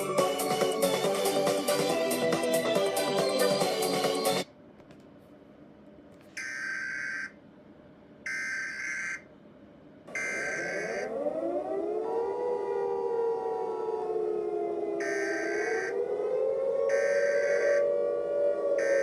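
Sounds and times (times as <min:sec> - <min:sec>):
siren wailing: 0:08.3 - 0:09.2, 0:10.1 - 0:19.0.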